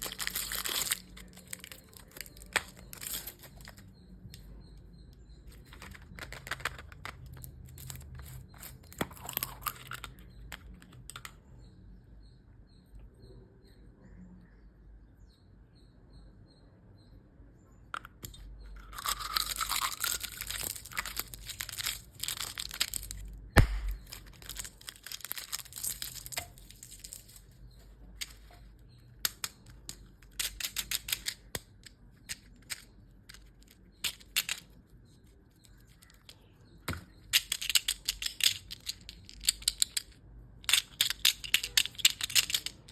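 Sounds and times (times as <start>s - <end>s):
plastic wrappers crinkling and tearing: 0.0s - 3.9s, 5.5s - 10.2s, 18.9s - 27.6s
sharp click: 23.6s - 24.1s.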